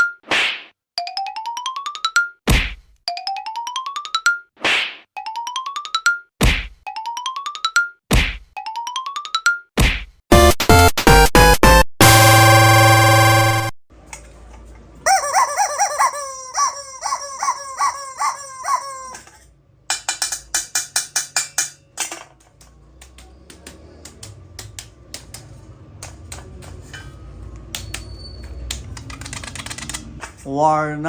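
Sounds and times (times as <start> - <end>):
playful sound-effect music: 10.3 - 13.7
falling chirps: 15.1 - 19.2.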